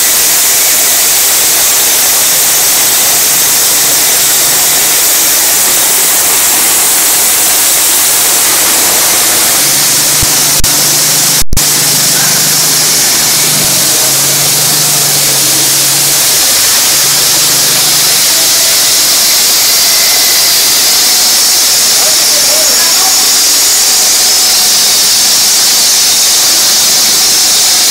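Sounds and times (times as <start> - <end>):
concrete saw grinding: 0.0 - 27.9
saw engine: 0.0 - 27.9.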